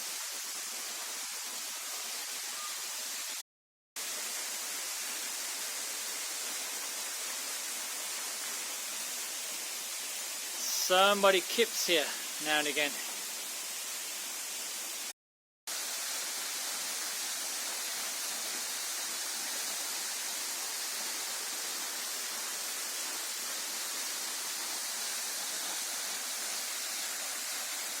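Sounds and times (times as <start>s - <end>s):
waterfall rushing: 10.6s - 13.2s, 15.8s - 28.0s.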